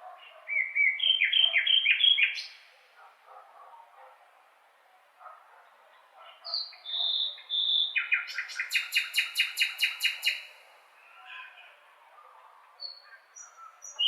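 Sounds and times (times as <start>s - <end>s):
blackbird singing: 0.2s - 2.7s, 6.4s - 11.6s, 12.8s - 14.0s.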